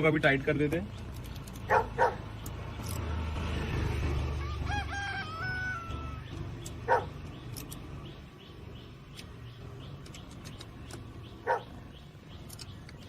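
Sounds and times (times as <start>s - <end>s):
dog bark: 1.7s - 2.2s, 6.9s - 7.1s, 11.4s - 11.7s.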